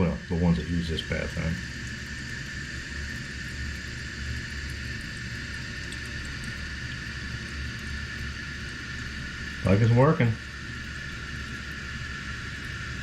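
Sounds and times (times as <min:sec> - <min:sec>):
toilet tank refilling hiss: 0:00.0 - 0:13.0.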